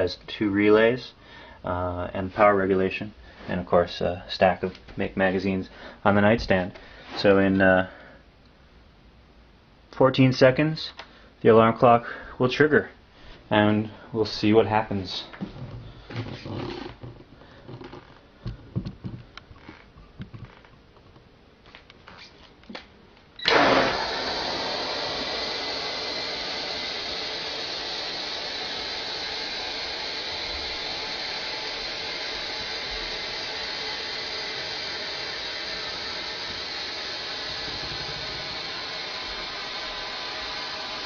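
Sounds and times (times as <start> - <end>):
faint clicks and rustles: 15.4 - 22.9
compressed air bursting out: 23.4 - 41.0.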